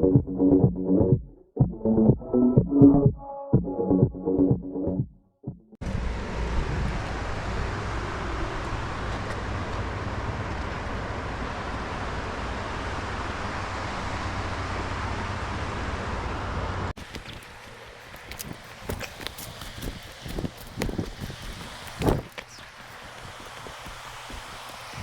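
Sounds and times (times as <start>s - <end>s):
low engine hum: 5.8s - 25.0s
vehicle road noise: 5.8s - 25.0s.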